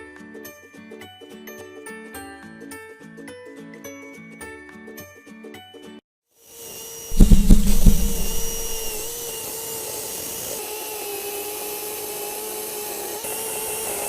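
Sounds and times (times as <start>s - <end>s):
loud knocks: 7.2s - 9.2s.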